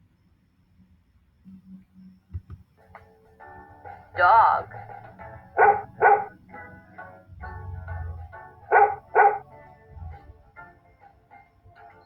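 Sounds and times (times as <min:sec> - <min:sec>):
soft background music: 0:00.0 - 0:12.0
dog barking: 0:05.5 - 0:06.4, 0:08.7 - 0:09.5.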